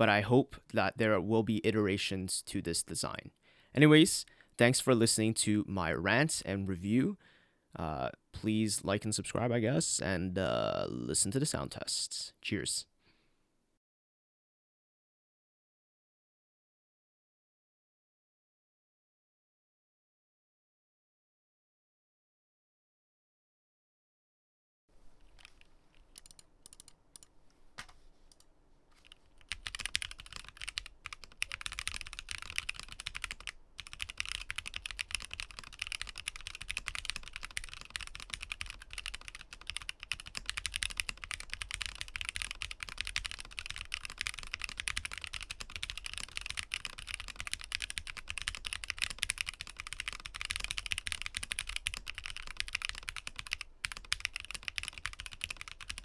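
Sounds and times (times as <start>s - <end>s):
keyboard typing: 25.2s - 56.0s.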